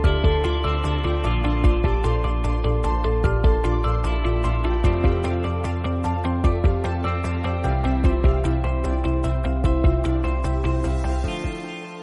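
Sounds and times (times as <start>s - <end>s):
ambient synth music with beat: 0.0s - 12.0s.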